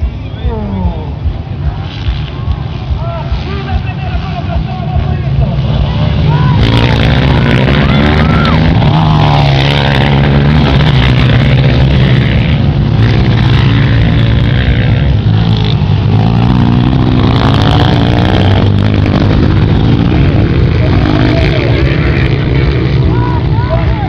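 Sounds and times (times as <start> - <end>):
dirt bike engine revving: 0.0 - 24.0.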